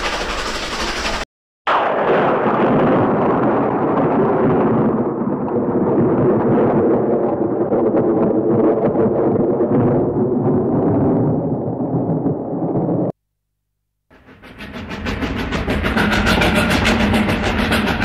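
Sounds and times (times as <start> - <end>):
loud steady rumbling: 14.1 - 18.0.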